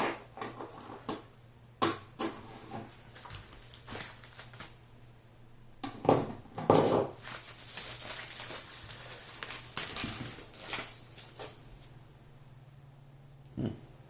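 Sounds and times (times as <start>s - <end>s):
scraping and rustling: 2.4s - 4.8s, 7.1s - 12.0s.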